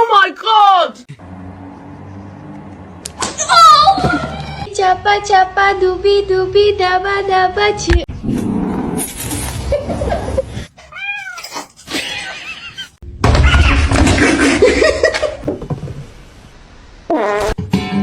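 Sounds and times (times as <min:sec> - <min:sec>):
cat meowing: 0:10.8 - 0:11.8.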